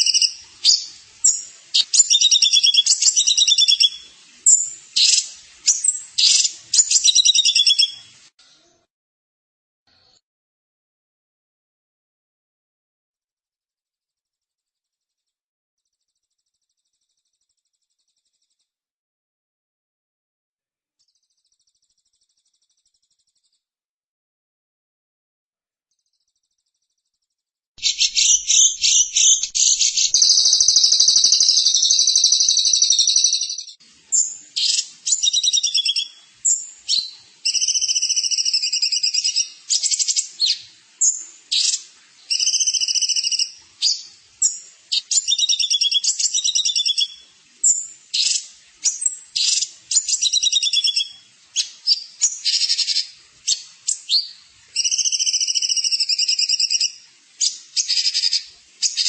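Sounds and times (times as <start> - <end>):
songbird trilling: 0.0 - 8.0, 27.8 - 53.1, 53.9 - 57.0.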